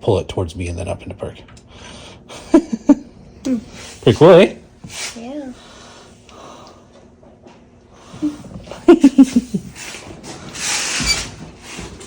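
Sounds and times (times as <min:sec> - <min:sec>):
person laughing: 0:02.4 - 0:03.1, 0:08.2 - 0:09.8.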